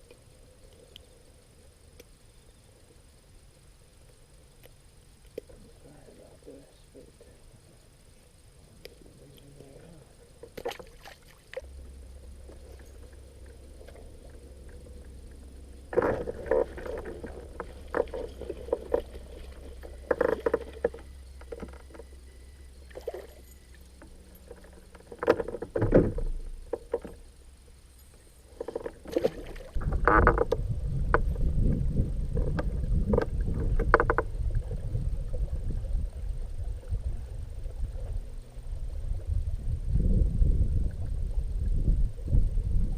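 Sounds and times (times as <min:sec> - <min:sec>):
low steady hum: 0:00.0 - 0:42.9
loud low rumble: 0:11.6 - 0:20.0, 0:29.8 - 0:42.9.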